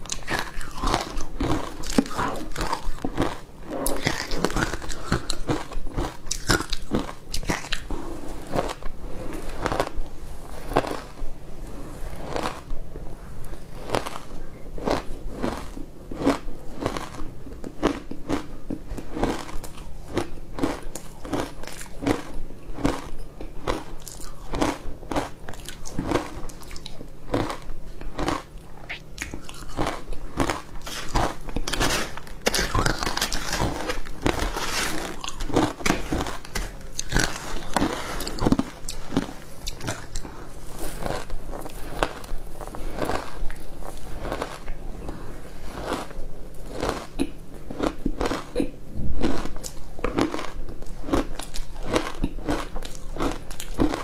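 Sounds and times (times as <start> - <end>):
chewing ice crunching: 0.0 - 8.9, 10.6 - 11.2, 13.6 - 54.0.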